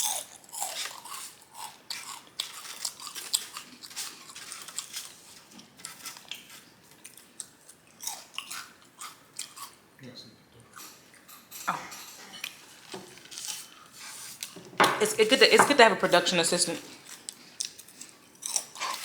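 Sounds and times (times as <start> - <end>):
person chewing potato chips: 0.0 - 9.8, 16.9 - 19.0.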